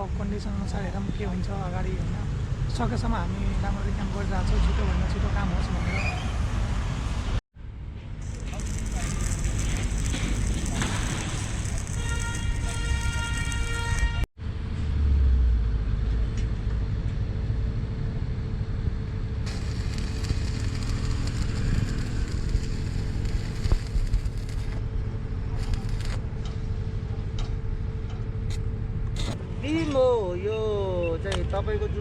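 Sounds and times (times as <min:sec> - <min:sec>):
machinery low rumble: 0:06.5 - 0:29.2
high machine whine: 0:08.0 - 0:14.3, 0:19.5 - 0:26.4.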